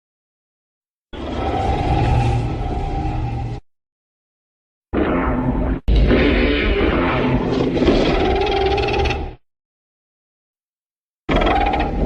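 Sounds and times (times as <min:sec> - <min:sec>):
monster roar: 0:05.0 - 0:09.2.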